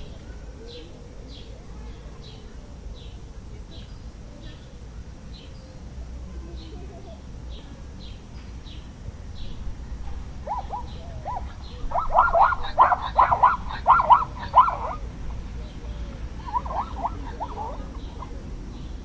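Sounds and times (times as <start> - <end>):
animal yelping calls: 10.1 - 19.0
bird chirping: 10.1 - 19.0.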